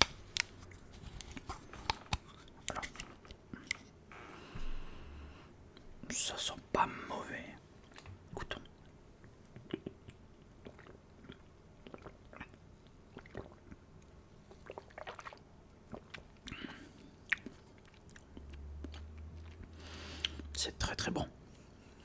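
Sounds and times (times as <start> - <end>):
person sipping a drink: 0.0 - 5.3, 14.6 - 20.5.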